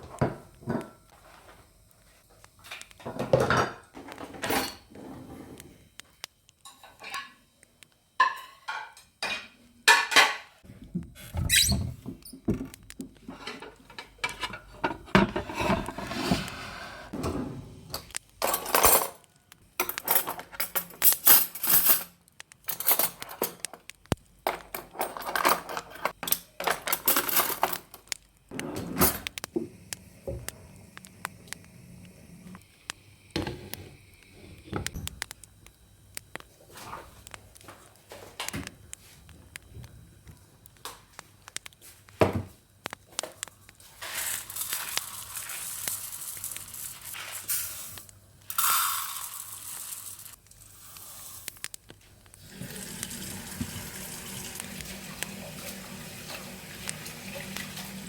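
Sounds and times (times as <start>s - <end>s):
cookware and utensils clinking: 8.2s - 10.6s, 13.3s - 16.4s, 17.9s - 19.2s, 19.8s - 23.9s, 24.5s - 28.0s
squeaks: 11.4s - 11.9s.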